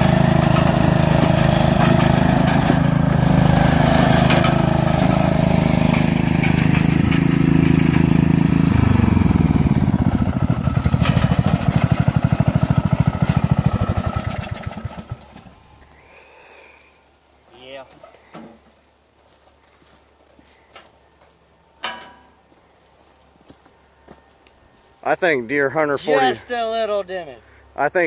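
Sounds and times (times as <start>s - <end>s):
riding lawn mower engine running: 0.0s - 15.8s.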